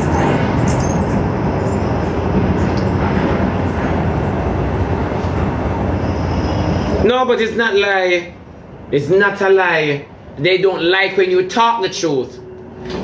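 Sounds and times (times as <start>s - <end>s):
loud low rumbling noise: 0.0s - 8.9s.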